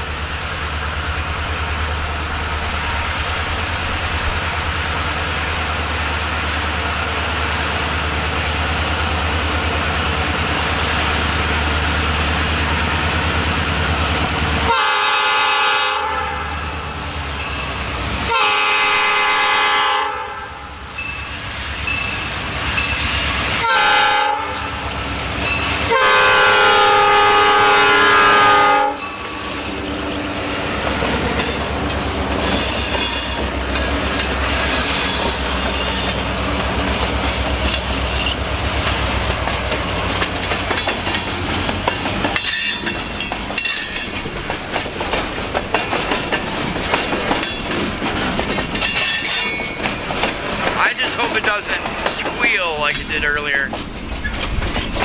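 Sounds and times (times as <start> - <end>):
locomotive horn blasts: 14.6 - 16.7, 18.2 - 20.7, 23.6 - 24.8, 25.9 - 29.1
train wheels clacking on rails: 20.9 - 55.0.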